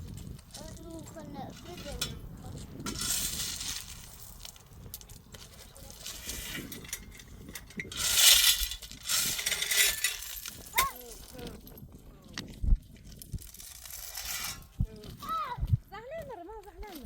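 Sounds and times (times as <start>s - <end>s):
pebbles rattling and pouring: 2.8s - 11.4s.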